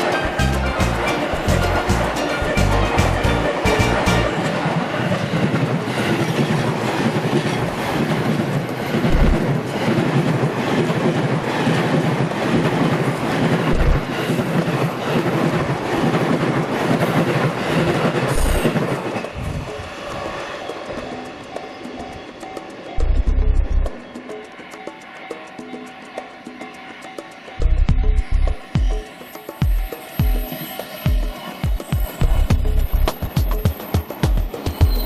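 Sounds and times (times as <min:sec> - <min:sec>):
train wheels clacking on rail joints: 0:00.0 - 0:35.0
high wheel squeal: 0:24.1 - 0:35.0.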